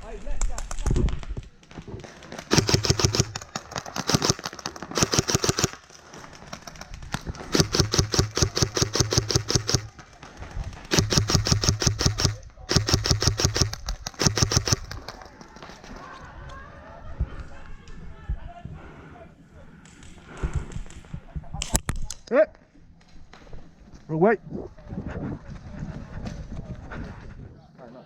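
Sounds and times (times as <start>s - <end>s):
airsoft guns firing bursts: 2.0s - 15.2s.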